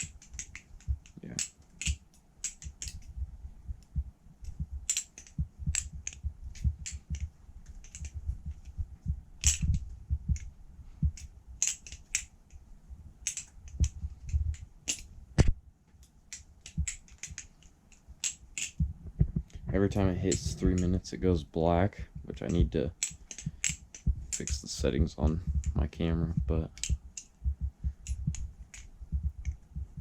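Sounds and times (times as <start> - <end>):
dull low thumps: 3.0 - 11.6, 12.9 - 15.7, 18.8 - 22.9, 23.5 - 30.0.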